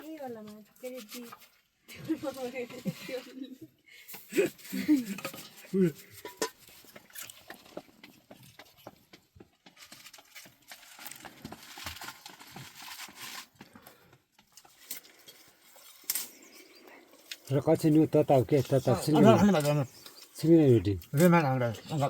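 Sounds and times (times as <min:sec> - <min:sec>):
dishes and utensils clinking: 0:05.0 - 0:07.2.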